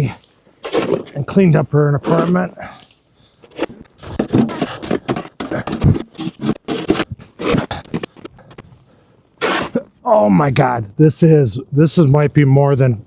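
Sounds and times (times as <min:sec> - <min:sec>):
snow crunching and scraping: 0:00.6 - 0:02.6, 0:03.5 - 0:08.3.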